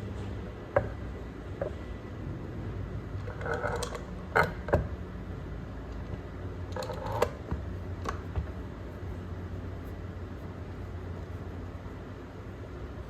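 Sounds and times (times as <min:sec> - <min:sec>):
steady low hum: 0:00.0 - 0:13.0
creaking scrapes: 0:03.2 - 0:04.6.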